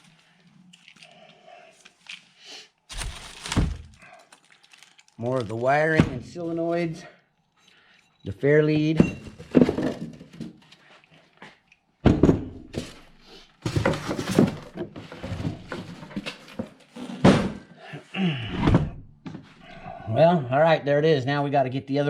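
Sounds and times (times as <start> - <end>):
packaging rustling: 0.0 - 5.9
thunks and knocks of parts: 2.9 - 4.1, 9.0 - 10.7, 12.0 - 17.7.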